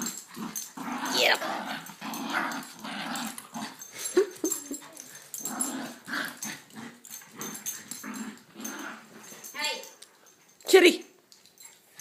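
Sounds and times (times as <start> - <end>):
puppies growling: 0.0 - 9.5.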